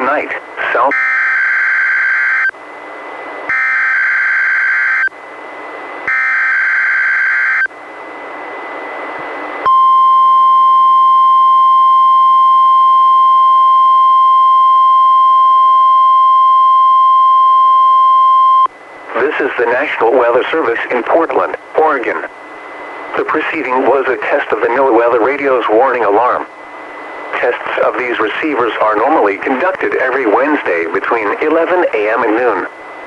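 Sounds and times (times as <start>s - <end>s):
steady warning alarm tone: 0.0s - 2.6s, 3.5s - 5.3s, 6.0s - 7.8s, 9.6s - 18.7s
harsh digital data buzz: 0.6s - 2.6s, 3.5s - 5.1s, 6.1s - 7.7s.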